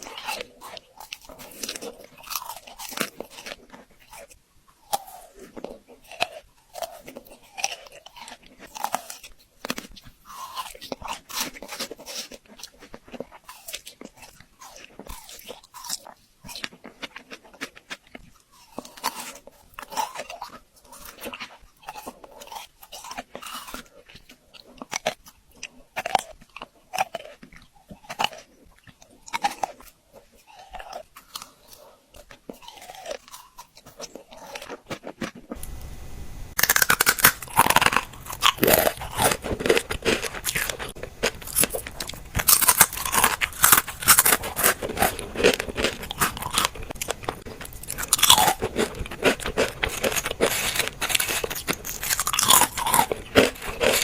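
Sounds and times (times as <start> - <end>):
crunching frozen fruit: 0.0 - 35.6, 36.5 - 54.0
dense crackling: 35.6 - 54.0.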